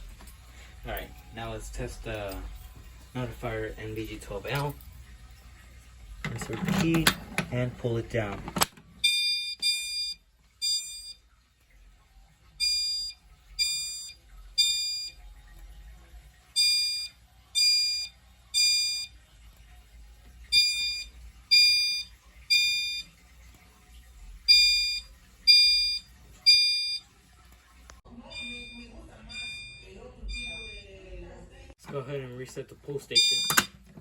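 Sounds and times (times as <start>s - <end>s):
fire alarm short tones: 9.0s - 11.2s, 12.6s - 15.2s, 16.6s - 19.1s, 20.5s - 23.1s, 24.5s - 27.1s, 28.1s - 31.0s, 33.1s - 33.7s.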